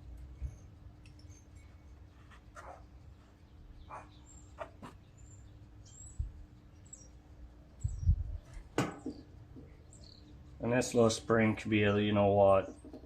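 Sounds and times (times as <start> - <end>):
faint bird chirps: 0.3 - 10.6
light clicks and taps of tools: 0.9 - 1.4.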